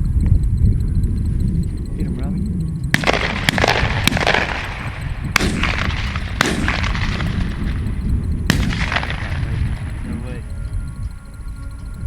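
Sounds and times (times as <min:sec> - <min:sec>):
steady low rumble: 0:00.0 - 0:12.0
shotgun shots: 0:02.9 - 0:10.3.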